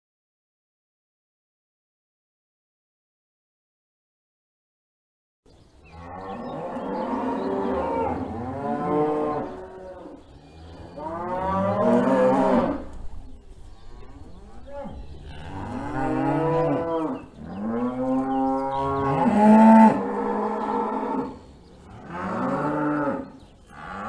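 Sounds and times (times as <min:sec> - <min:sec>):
cattle mooing: 0:05.9 - 0:13.0, 0:13.6 - 0:24.0.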